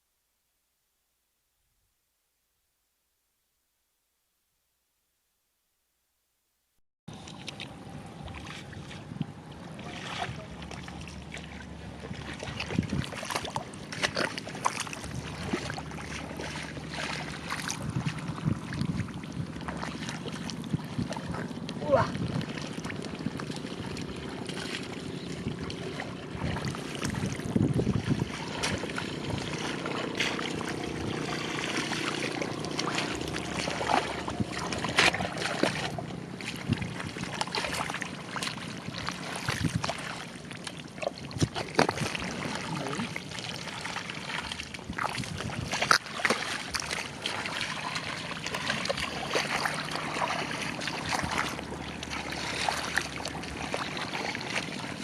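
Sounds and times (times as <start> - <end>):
sloshing in muddy water: 7.1 - 55.0
sharp water slaps: 12.2 - 55.0.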